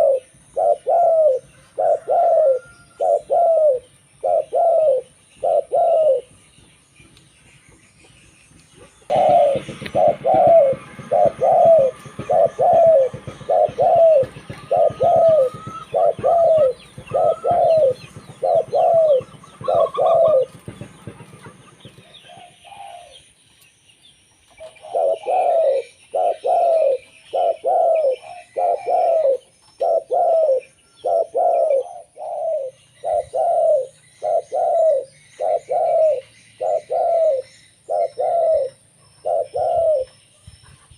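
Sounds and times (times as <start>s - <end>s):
dove cooing: 0.0s - 6.4s, 8.8s - 23.2s, 24.6s - 40.2s.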